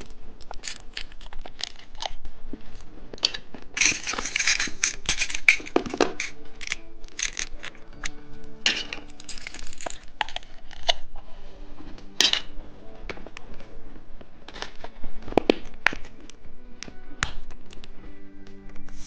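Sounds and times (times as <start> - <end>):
candy packaging crinkling: 0.0 - 11.3, 13.1 - 16.4
soft background music: 0.0 - 19.0.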